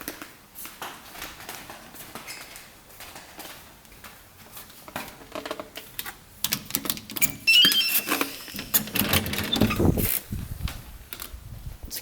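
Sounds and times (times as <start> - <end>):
short electronic beeps: 7.3 - 8.8.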